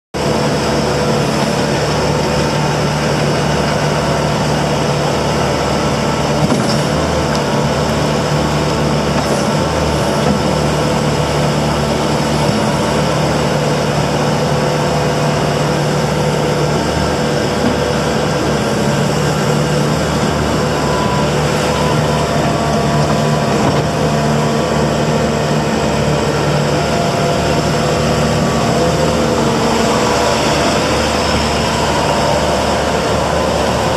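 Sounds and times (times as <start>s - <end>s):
diesel engine running: 0.2s - 33.9s.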